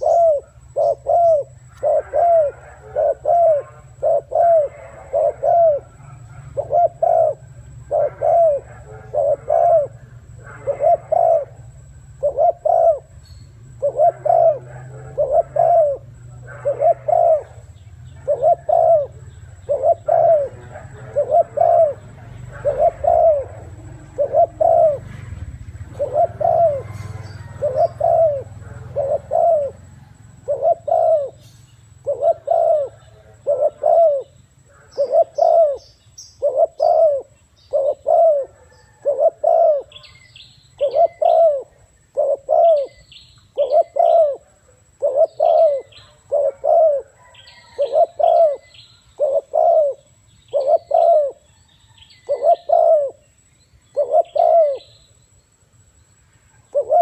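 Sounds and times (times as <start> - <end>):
dove cooing: 0.0 - 55.2, 56.4 - 57.0.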